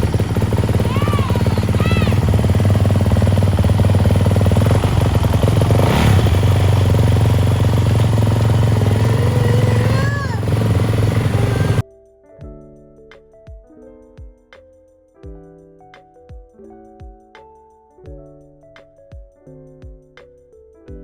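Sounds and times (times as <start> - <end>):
dirt bike engine idling: 0.0 - 11.8.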